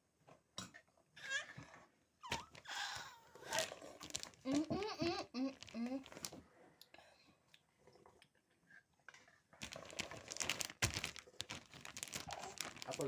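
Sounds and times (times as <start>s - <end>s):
thin plastic crinkling: 3.4s - 6.4s, 9.2s - 13.0s.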